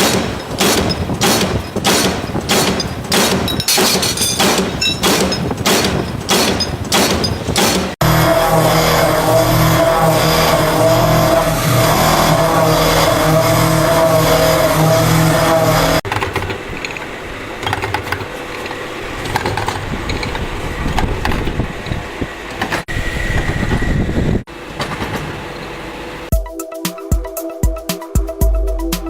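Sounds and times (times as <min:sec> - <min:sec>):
machine clicks and knocks: 0:00.0 - 0:08.0, 0:16.0 - 0:22.9
factory machine hum: 0:00.0 - 0:26.3.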